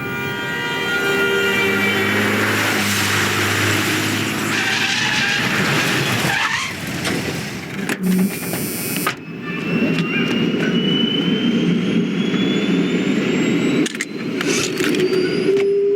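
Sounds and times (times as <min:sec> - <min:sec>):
vehicle driving by: 0:01.4 - 0:06.3
falling sweep: 0:01.6 - 0:06.8.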